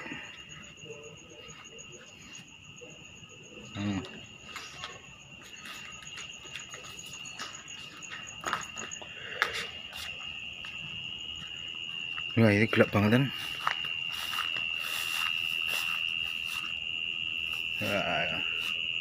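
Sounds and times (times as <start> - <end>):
insect chirping in quick pulses: 0.0 - 19.0
mole cricket high trill: 11.2 - 19.0.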